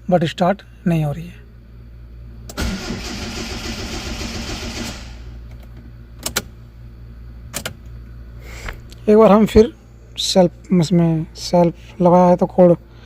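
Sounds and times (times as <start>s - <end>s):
engine cranking without starting: 2.5s - 5.4s.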